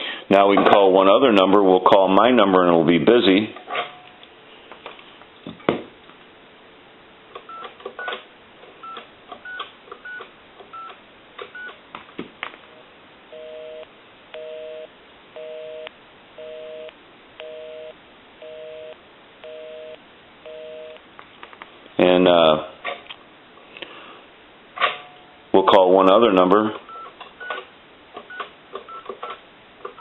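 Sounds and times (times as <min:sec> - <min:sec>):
busy signal beeps: 0:13.4 - 0:21.0.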